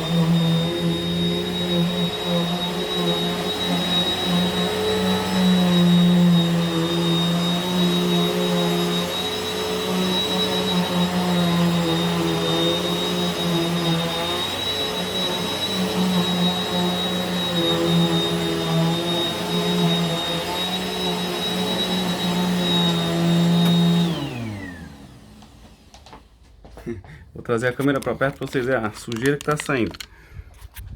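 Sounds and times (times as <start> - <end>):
motor winding down: 0.0 - 24.8
vacuum cleaner running: 0.0 - 27.2.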